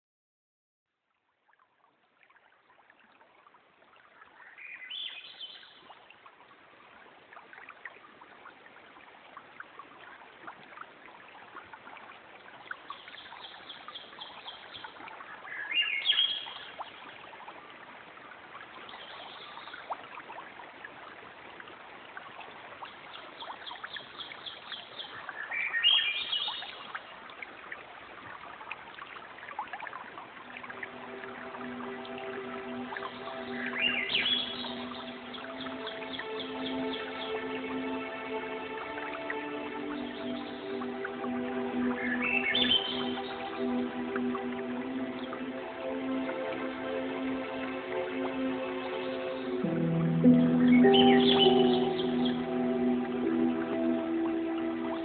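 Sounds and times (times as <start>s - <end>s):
waterfall rushing: 30.4s - 55.0s.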